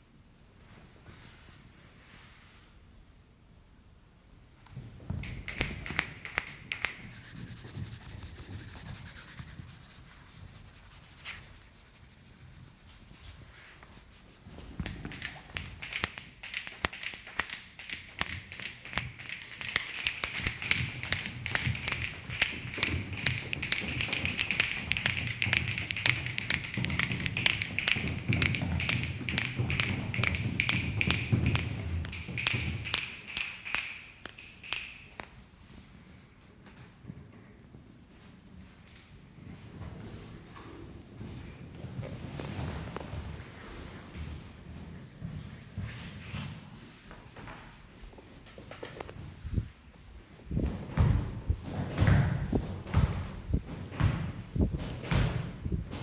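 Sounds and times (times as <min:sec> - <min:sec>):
hands tapping and clicking objects: 0:05.1 - 0:12.0, 0:12.9 - 0:35.4
hands rubbing objects: 0:05.2 - 0:35.4.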